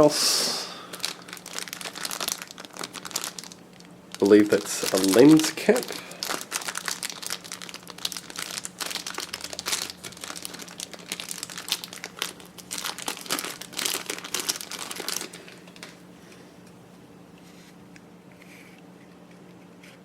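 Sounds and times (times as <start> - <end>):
packaging crinkling and rustling: 0.9 - 16.0.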